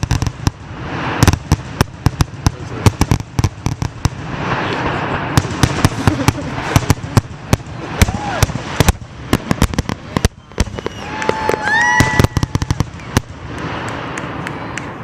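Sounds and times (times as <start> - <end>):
fireworks bangs and crackles: 0.0 - 15.0
hissing wash: 0.0 - 15.0.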